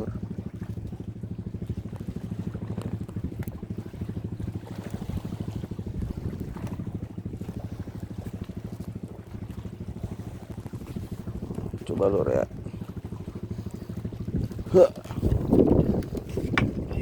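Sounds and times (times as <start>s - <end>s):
small engine running: 0.0s - 17.0s.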